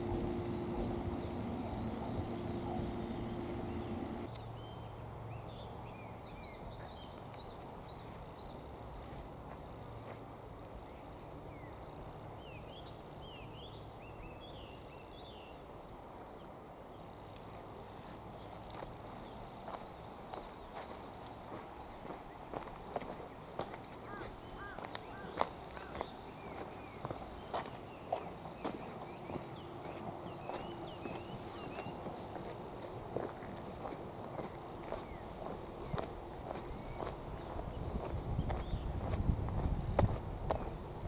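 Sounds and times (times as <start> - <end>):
low machine hum: 0.0 - 4.3
insects buzzing: 0.0 - 6.5, 12.6 - 41.0
bird chirps: 0.0 - 7.3.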